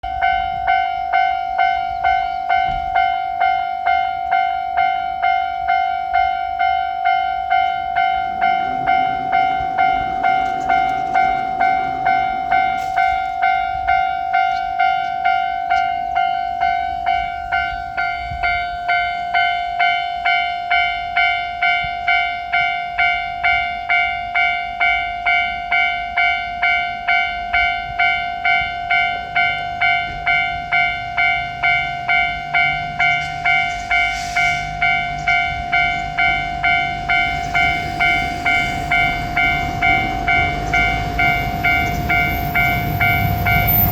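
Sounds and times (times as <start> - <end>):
level crossing warning bell: 0.0 - 43.9
low rumble: 7.3 - 14.2.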